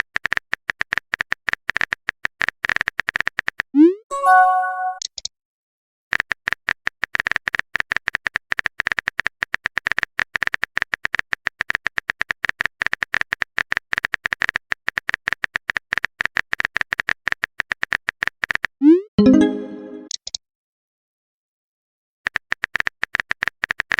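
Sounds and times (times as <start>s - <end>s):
notification chime: 4.1s - 5.0s, 19.2s - 20.1s.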